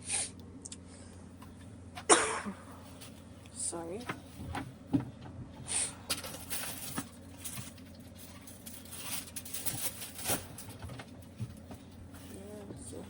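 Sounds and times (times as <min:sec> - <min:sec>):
kitchen utensils rustling and clicking: 0:05.9 - 0:13.0.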